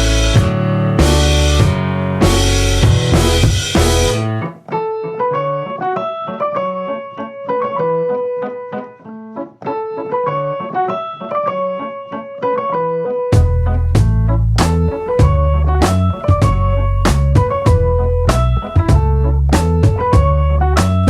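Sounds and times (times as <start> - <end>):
drums and bass: 0.0 - 4.4, 13.4 - 21.0
solo piano melody: 0.0 - 21.0.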